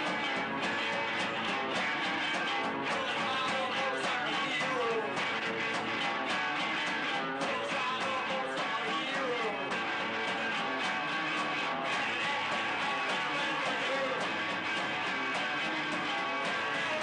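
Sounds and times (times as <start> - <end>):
rock guitar strumming over beat: 0.0 - 17.0.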